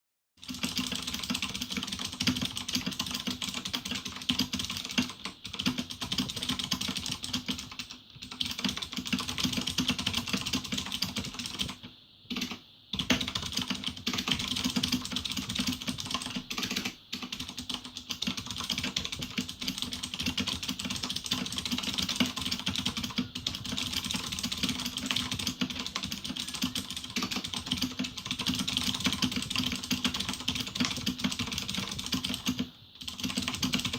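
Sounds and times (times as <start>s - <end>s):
mechanical keyboard typing: 0.4s - 33.9s.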